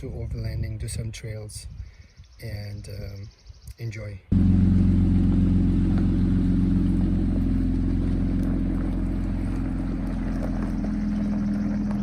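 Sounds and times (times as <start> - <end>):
engine running in low hum: 4.3 - 12.0.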